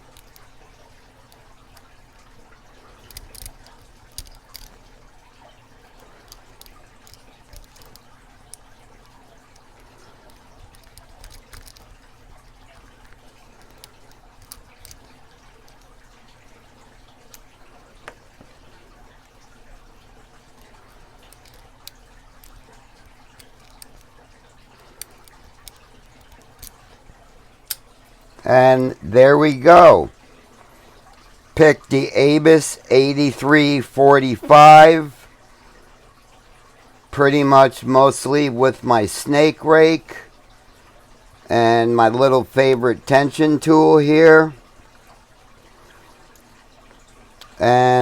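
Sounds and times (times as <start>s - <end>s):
lock picking metallic clicks: 10.3s - 12.0s.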